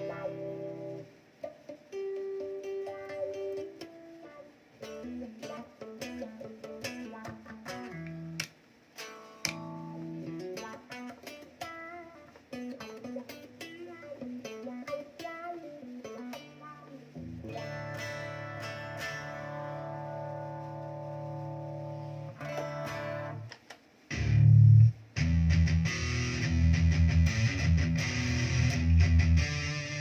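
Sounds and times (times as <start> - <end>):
electric guitar chord ringing: 0.0 - 1.1, 15.6 - 23.5, 24.1 - 30.0
electric guitar single notes: 0.0 - 30.0.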